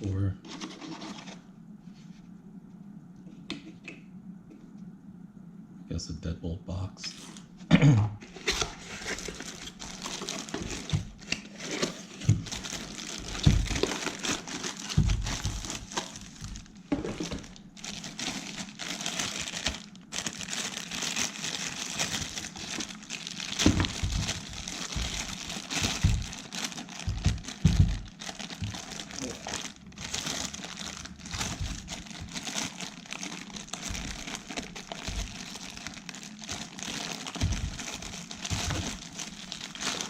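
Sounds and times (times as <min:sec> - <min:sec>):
plastic packaging crinkling: 0:08.2 - 0:40.0.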